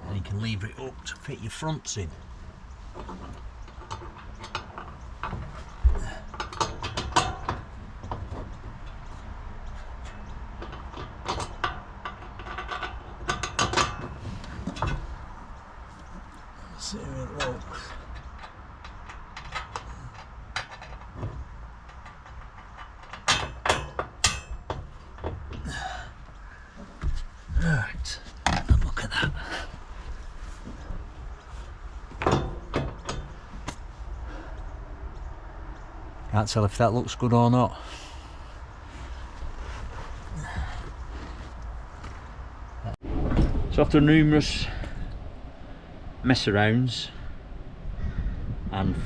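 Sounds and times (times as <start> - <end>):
parcel shelf clicks and knocks: 17.4 - 25.6.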